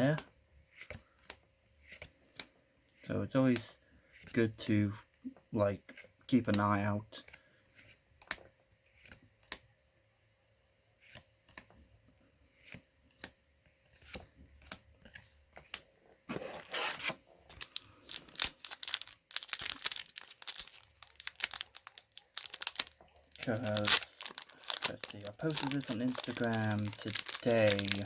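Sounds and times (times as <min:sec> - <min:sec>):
foil wrapper tearing and crinkling: 0:16.3 - 0:28.0.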